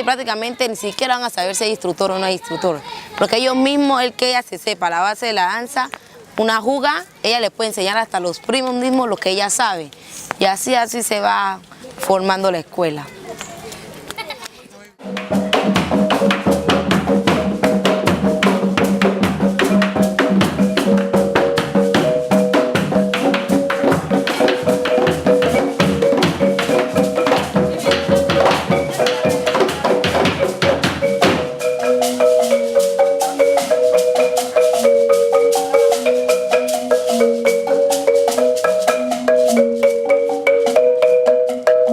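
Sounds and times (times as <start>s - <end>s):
percussion and lower parts: 0.0s - 41.9s
marimba playing: 15.0s - 41.9s.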